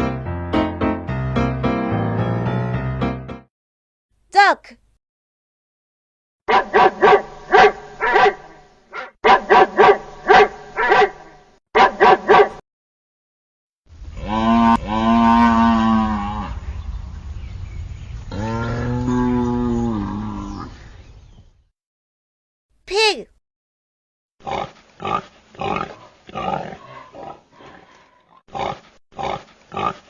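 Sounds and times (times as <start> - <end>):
long low animal calls: 18.3 - 20.9.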